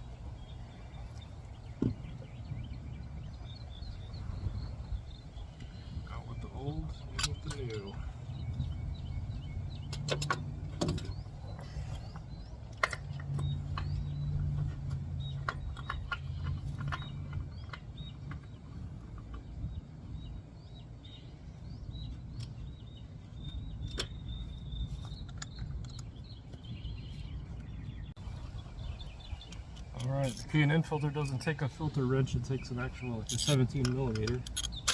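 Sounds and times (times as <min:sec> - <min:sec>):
hand tools clinking: 0:33.2 - 0:34.9.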